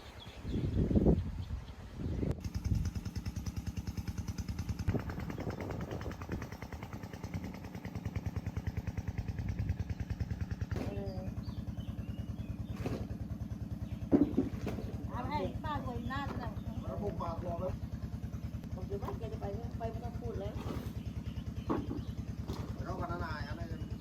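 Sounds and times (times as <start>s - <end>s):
small engine puttering: 2.4s - 24.0s.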